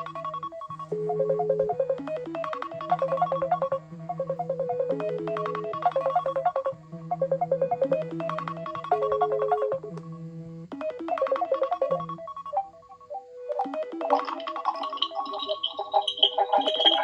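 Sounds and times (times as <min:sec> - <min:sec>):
smartphone ringtone melody: 0:10.8 - 0:17.0.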